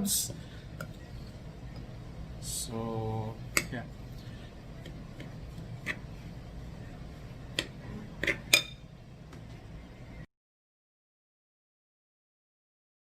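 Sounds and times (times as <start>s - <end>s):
low steady hum: 0.0s - 10.3s
utensil clinking against bowl: 8.2s - 8.8s.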